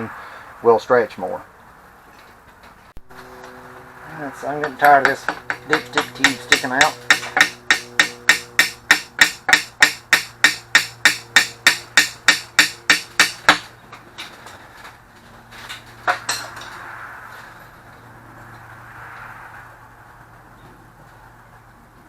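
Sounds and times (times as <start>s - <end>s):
hammer blows on metal tube: 4.6s - 13.7s.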